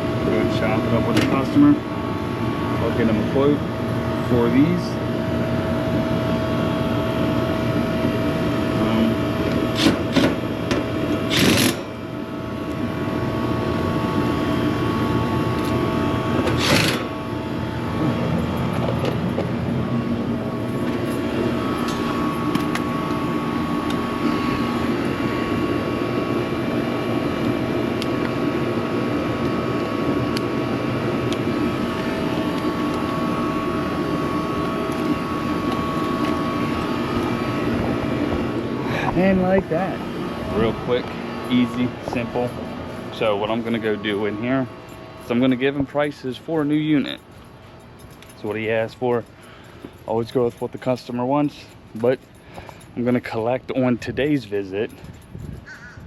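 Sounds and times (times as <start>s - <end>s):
air conditioner droning: 0.0s - 56.0s.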